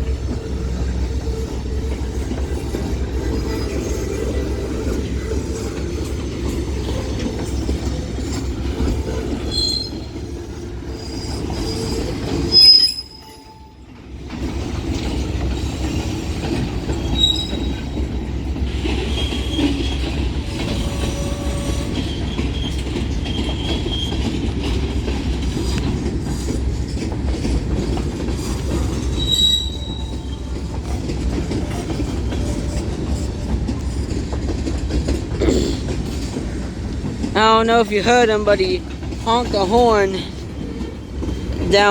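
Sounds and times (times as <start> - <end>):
wheel squeals: 0.0 - 13.8, 14.8 - 34.4
freight train cars rumbling past: 0.0 - 41.9.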